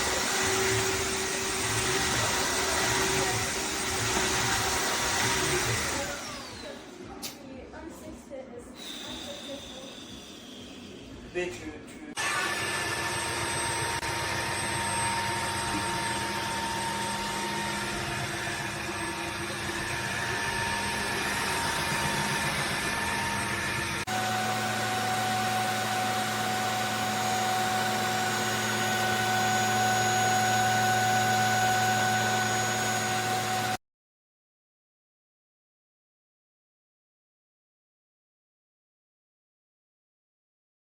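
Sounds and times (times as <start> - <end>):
vacuum mop motor humming and whining: 0.0 - 7.0, 8.8 - 11.0, 12.2 - 33.8.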